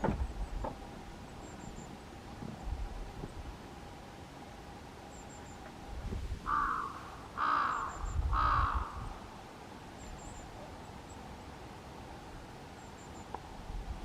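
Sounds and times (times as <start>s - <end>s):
crow cawing: 6.5s - 9.3s.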